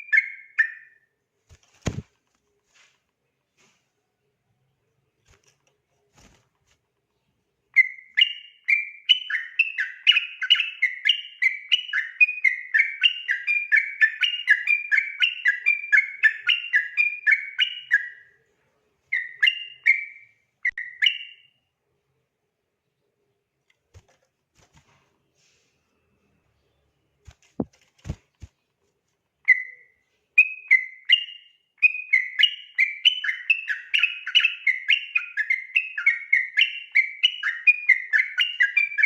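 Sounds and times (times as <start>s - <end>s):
bird singing whistled notes: 0.0s - 1.1s, 7.7s - 18.4s, 19.1s - 21.6s, 29.4s - 39.0s.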